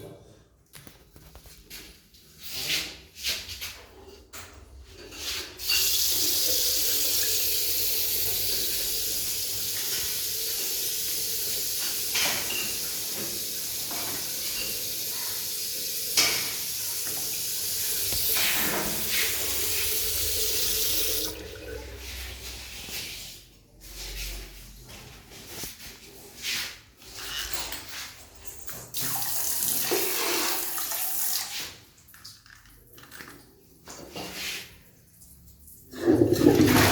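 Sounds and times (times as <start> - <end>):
tap water running into basin: 5.6 - 22.6, 28.5 - 34.2, 35.8 - 36.9.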